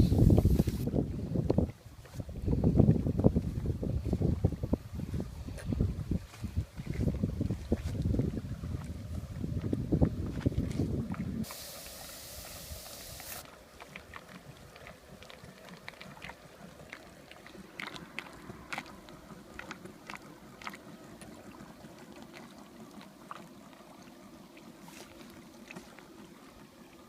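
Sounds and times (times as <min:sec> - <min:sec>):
faint steady hum: 0:00.0 - 0:13.7
water lapping and trickling: 0:00.0 - 0:27.0
small splashes and ticks: 0:05.5 - 0:27.0.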